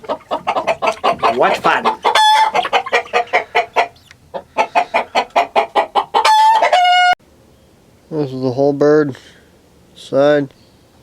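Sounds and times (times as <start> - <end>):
chicken squawk: 0.0 - 7.2
chickens clucking: 0.0 - 7.2.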